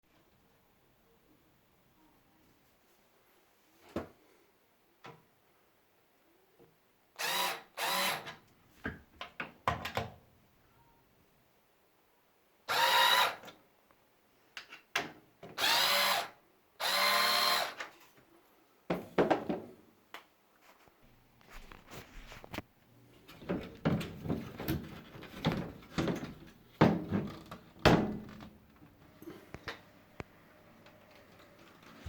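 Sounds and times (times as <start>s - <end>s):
power drill running: 7.2s - 8.3s, 12.7s - 13.4s, 15.6s - 17.8s.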